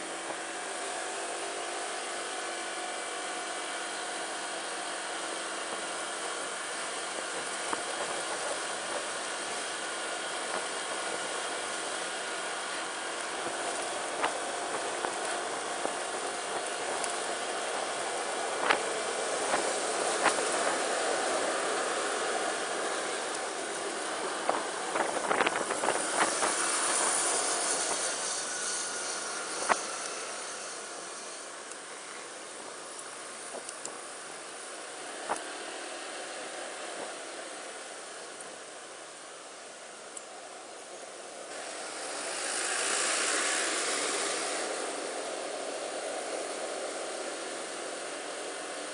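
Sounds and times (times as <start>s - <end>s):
road noise: 0.0s - 48.9s
traffic noise: 0.0s - 48.9s
rushing wind: 2.8s - 38.2s, 40.6s - 48.9s
wind rush: 17.6s - 30.8s.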